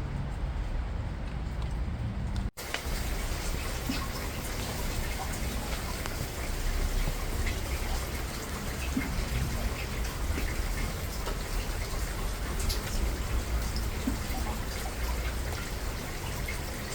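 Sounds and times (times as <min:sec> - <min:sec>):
steady rain falling: 0:02.6 - 0:16.9.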